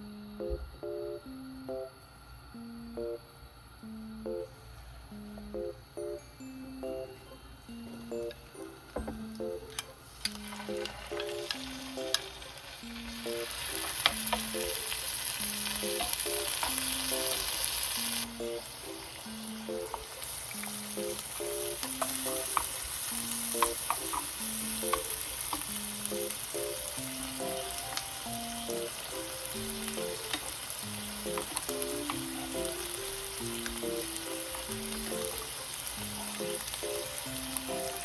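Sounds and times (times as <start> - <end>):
soft background music: 0.0 - 38.0
food sizzling in a pan: 9.2 - 38.0.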